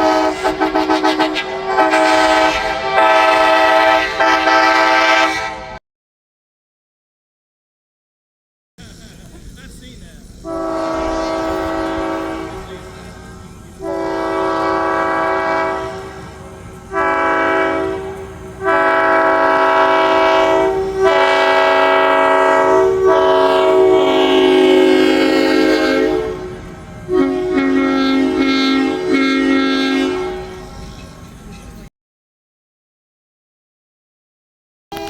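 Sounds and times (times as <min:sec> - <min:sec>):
locomotive air horn blasts: 0:00.0 - 0:05.8, 0:10.4 - 0:30.9.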